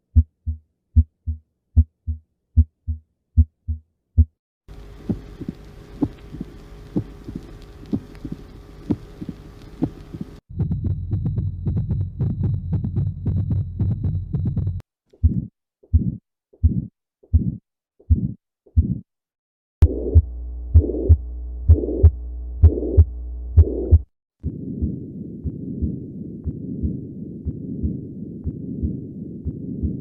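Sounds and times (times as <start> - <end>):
heartbeat lub-dub: 0.0 - 4.3, 5.0 - 19.0, 19.8 - 30.0
steady hum: 4.7 - 14.8, 19.8 - 24.7
heart murmur rumble with clicks: 5.0 - 19.0, 19.8 - 30.0.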